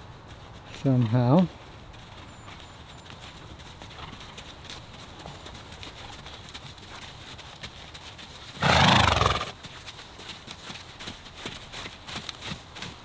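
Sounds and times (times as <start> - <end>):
horse whinnying: 8.6 - 9.6.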